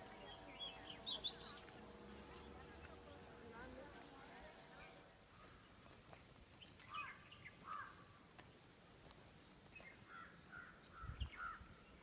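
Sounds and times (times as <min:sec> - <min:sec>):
faint bird calls: 0:06.8 - 0:08.1.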